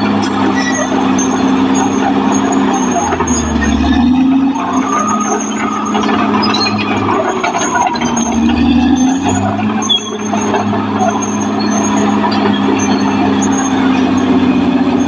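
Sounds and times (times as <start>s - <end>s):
bulldozer diesel engine drone: 0.0s - 15.0s
short high-pitched squeals: 0.2s - 15.0s.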